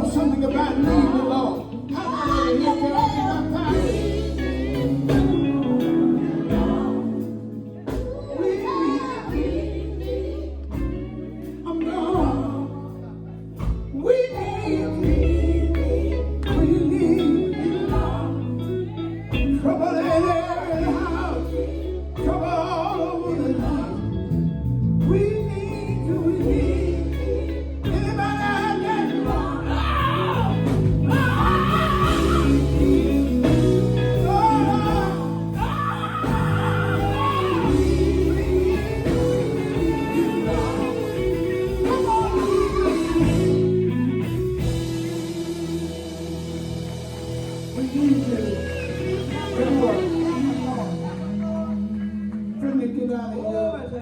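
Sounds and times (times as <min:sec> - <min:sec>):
gospel quartet singing: 0:00.0 - 0:53.1
backing band with bass and guitar: 0:00.0 - 0:54.0.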